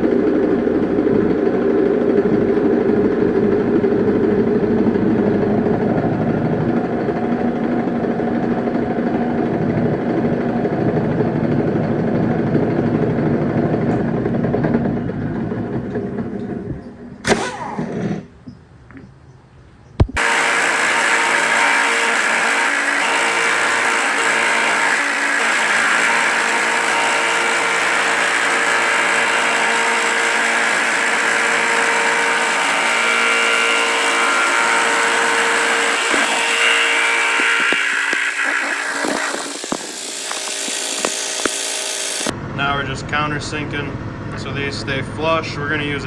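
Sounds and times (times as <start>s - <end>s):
milling machine cutting metal: 20.2s - 42.3s.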